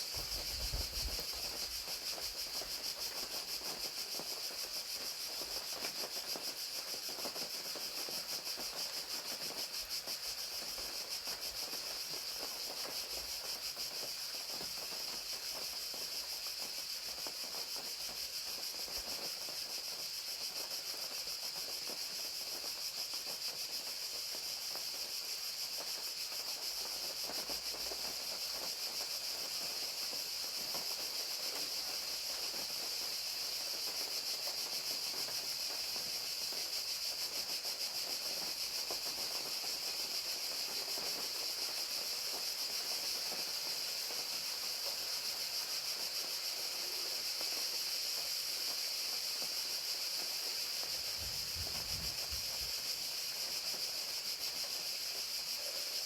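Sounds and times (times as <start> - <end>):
crickets trilling: 0.0 - 56.0
rain falling: 50.2 - 54.8.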